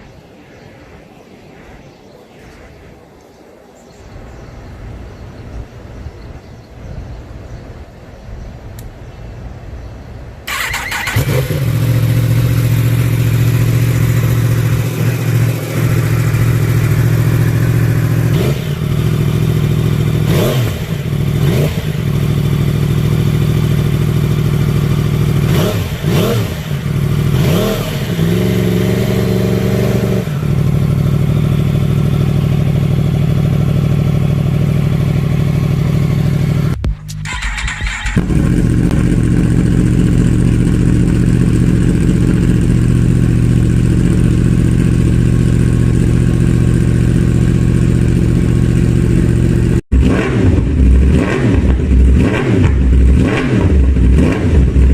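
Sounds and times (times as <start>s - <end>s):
motorcycle engine idling and revving: 10.5s - 54.9s.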